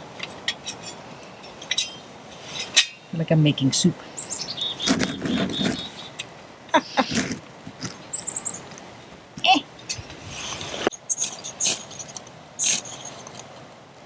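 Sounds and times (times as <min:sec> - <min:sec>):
small birds chirping: 0:04.0 - 0:09.7
rustling twigs: 0:04.2 - 0:06.4, 0:09.9 - 0:13.7.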